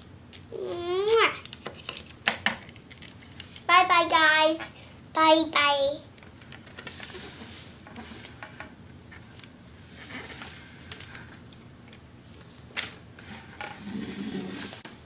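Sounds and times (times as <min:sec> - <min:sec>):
plastic toys rubbing: 0:09.8 - 0:11.4, 0:13.2 - 0:14.9.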